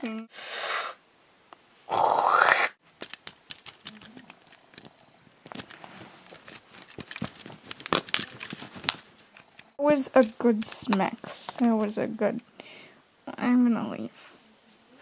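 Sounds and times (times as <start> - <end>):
small hard objects clicking: 3.0 - 12.0.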